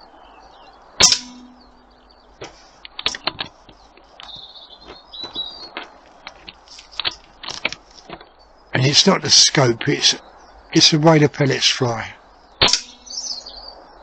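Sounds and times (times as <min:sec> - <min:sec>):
birds chirping: 0:00.0 - 0:14.0
ringing twang: 0:01.0 - 0:02.1, 0:12.6 - 0:13.2
small clicks and knocks: 0:02.4 - 0:08.3.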